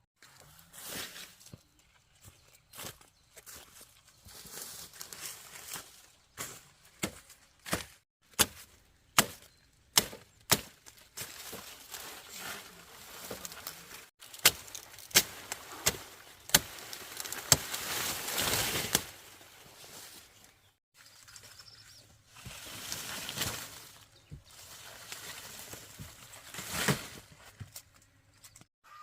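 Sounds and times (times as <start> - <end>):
blade chopping sugarcane: 7.0 - 11.6, 14.2 - 17.8.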